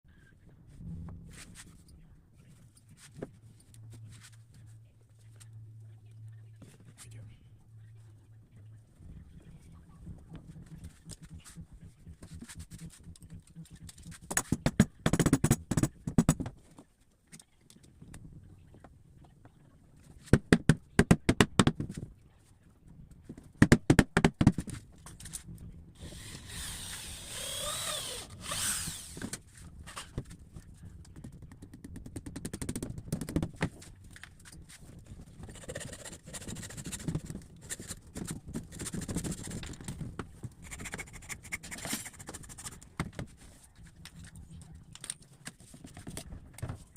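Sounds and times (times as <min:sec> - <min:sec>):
rapid sharp knocks on wood: 0:23.6 - 0:24.7.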